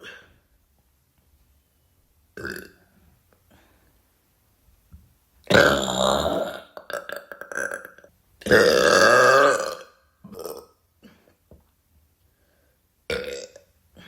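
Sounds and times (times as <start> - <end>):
woman burping: 2.4 - 2.8, 5.5 - 11.4, 13.1 - 14.0.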